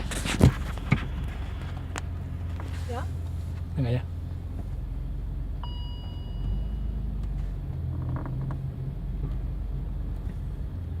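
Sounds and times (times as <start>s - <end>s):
car engine and road rumble: 0.0s - 11.0s
high electronic beep: 5.6s - 7.0s.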